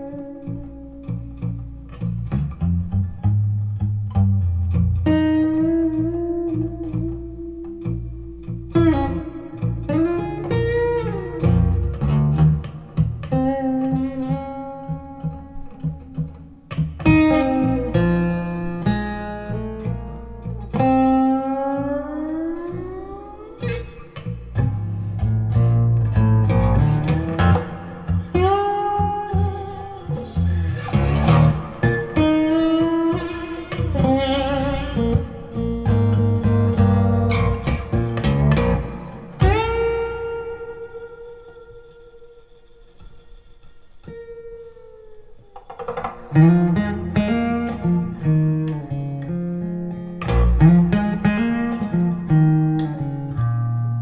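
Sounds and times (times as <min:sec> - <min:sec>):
low accompaniment: 0:00.0 - 0:44.5
blues guitar solo: 0:00.0 - 0:54.0
bass line: 0:24.2 - 0:40.3.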